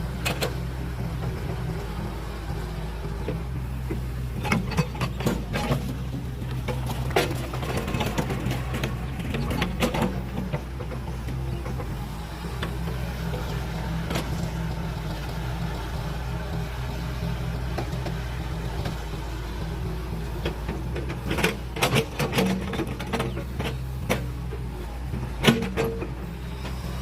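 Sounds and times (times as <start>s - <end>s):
heavy machine engine running: 0.0s - 27.0s
sharp metallic clanks and knocks: 3.9s - 11.9s.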